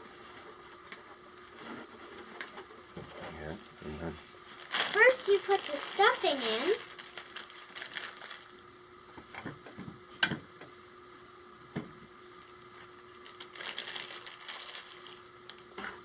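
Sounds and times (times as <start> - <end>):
rustling of stuffing and plastic parts: 4.5 - 8.6, 13.2 - 15.2.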